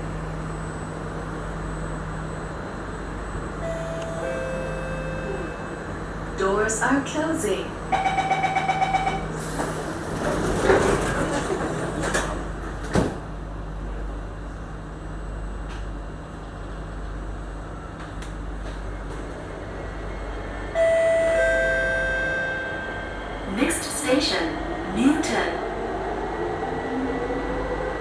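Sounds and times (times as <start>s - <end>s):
train running low rumble: 0.0s - 28.0s
train doors sliding shut: 8.3s - 13.4s.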